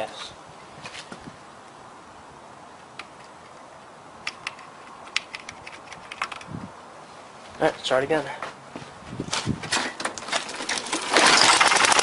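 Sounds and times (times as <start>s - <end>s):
steady low hiss: 0.0s - 9.7s
sharp clicks and taps: 4.2s - 6.5s.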